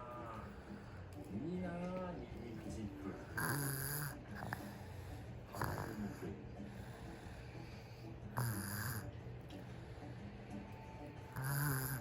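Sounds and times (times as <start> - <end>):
baby snoring: 3.4 - 4.6, 8.4 - 9.1, 11.3 - 12.0.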